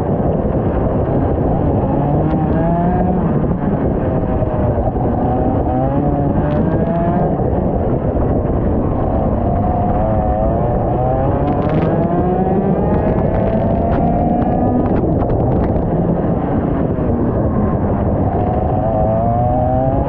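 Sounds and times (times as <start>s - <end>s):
kart engine racing: 0.0s - 20.0s
wind and track rumble: 0.0s - 20.0s.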